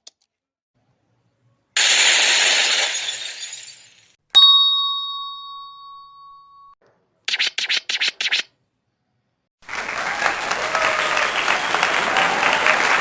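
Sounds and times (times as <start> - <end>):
bell-like ding: 4.4 - 6.8
applause: 9.6 - 13.0.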